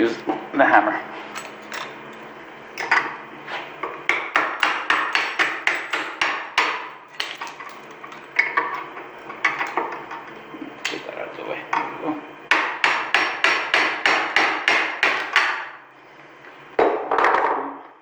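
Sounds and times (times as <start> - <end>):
hammer tapping on padlock: 4.1 - 7.4, 12.5 - 15.7.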